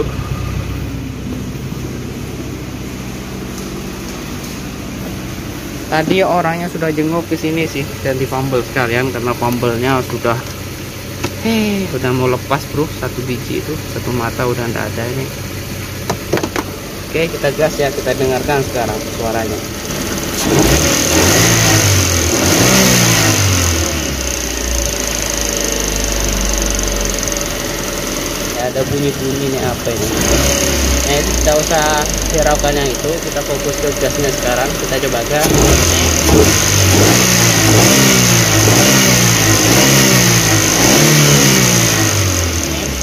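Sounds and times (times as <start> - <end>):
car engine revving and idling: 0.0 - 43.0.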